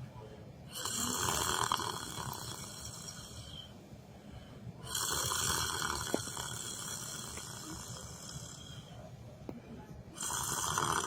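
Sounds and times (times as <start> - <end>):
person snoring: 0.7 - 3.7, 4.8 - 8.9, 10.2 - 11.0.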